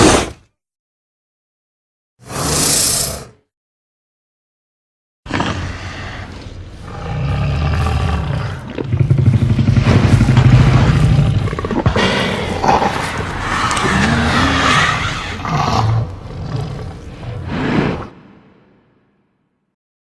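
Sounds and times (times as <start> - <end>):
creature growling and roaring: 5.3 - 18.2
creature snarling cries: 11.9 - 16.0.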